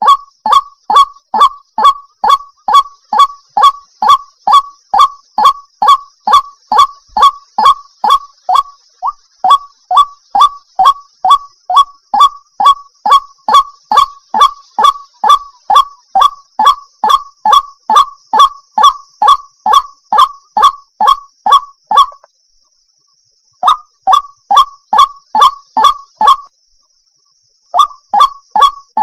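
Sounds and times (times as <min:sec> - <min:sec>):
water hen honking calls: 0:00.0 - 0:12.3.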